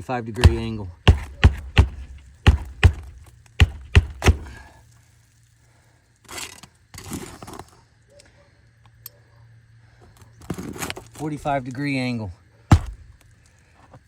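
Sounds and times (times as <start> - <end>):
hammer striking roofing nails: 0.4 - 4.6, 12.7 - 13.0.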